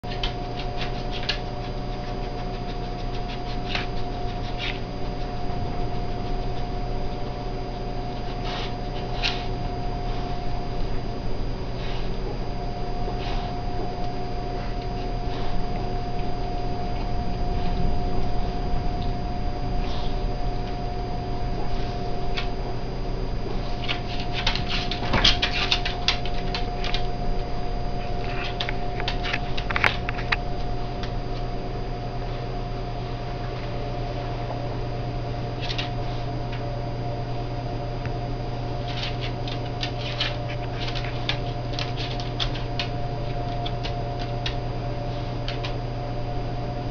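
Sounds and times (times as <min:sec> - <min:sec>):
refrigerator hum: 0:00.0 - 0:46.9.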